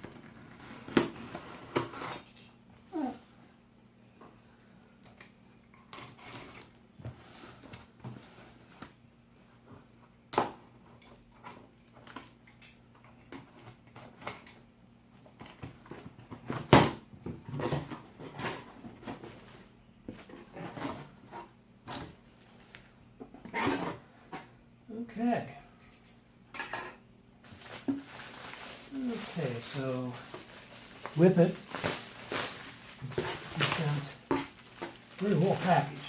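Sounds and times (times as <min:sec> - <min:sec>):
cardboard box rustling and scraping: 0:27.5 - 0:36.0.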